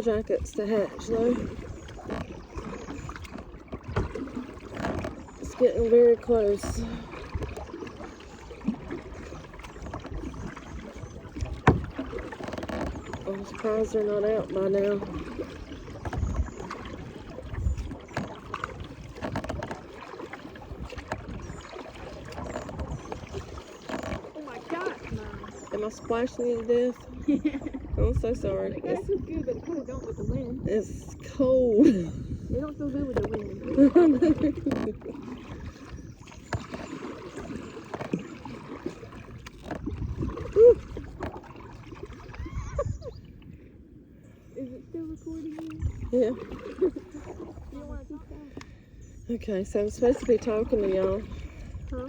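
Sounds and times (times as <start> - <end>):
water splashing and dripping: 0.0 - 43.7, 44.9 - 52.0
kayak paddle strokes in water: 0.0 - 52.0.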